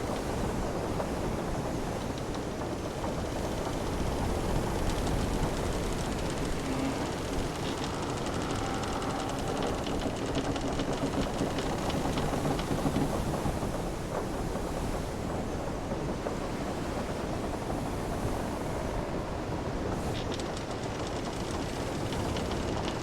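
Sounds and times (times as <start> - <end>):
wooden hull timbers creaking: 0.0 - 14.2, 19.8 - 23.0
wind: 0.0 - 23.0.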